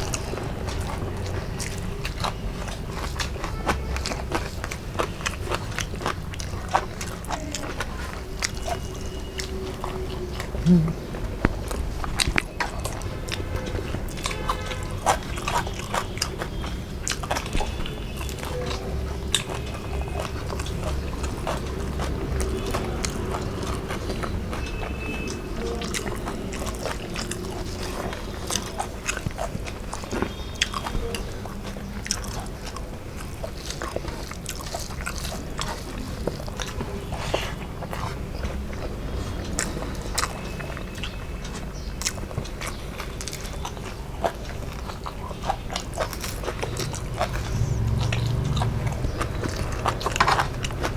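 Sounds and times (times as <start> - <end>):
person chewing food: 0.0 - 50.9
wet mouth clicks and smacks: 8.4 - 13.5.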